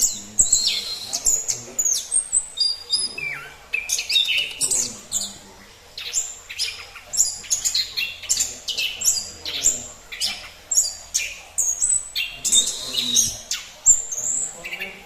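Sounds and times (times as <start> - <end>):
bird singing high phrases: 0.0 - 15.0.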